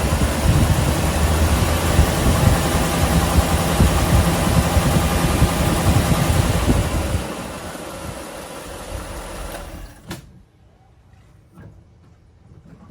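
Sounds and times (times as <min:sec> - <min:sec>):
engine running with knock: 0:00.0 - 0:10.0.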